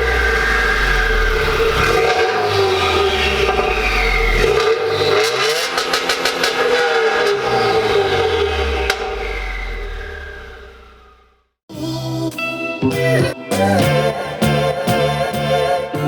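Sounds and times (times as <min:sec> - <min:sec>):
car engine revving: 0:00.0 - 0:11.6.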